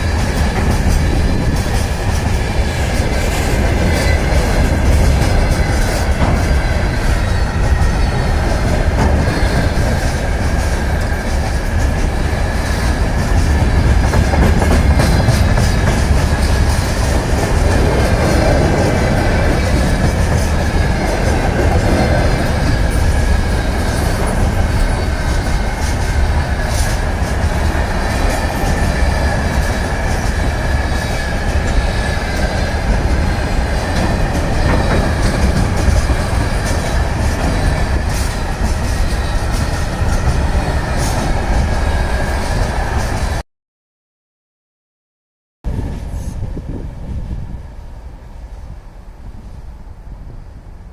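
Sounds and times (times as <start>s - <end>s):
freight train wagons rolling: 0.0s - 43.2s
train wheel clicks: 8.4s - 41.3s.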